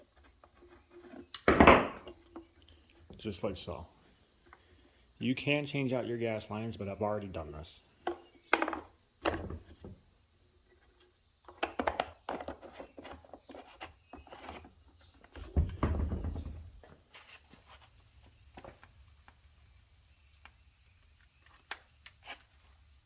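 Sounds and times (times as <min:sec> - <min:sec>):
tools and parts clicking and tapping: 0:08.0 - 0:09.8, 0:10.7 - 0:15.4
heavy dull thump: 0:15.6 - 0:16.8.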